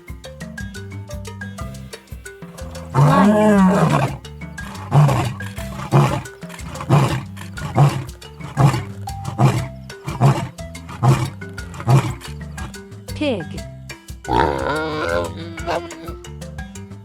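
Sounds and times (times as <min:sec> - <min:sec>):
background music: 0:00.0 - 0:17.0
lion roaring: 0:02.7 - 0:12.7, 0:14.3 - 0:16.0.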